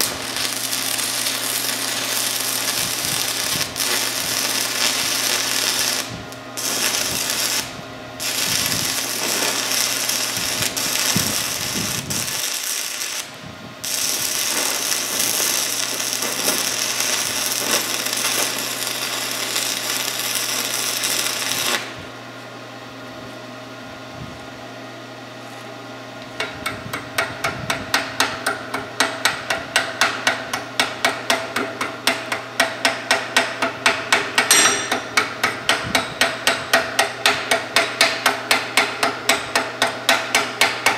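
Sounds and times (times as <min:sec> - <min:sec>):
welding arc crackling and hissing: 0:00.0 - 0:22.0.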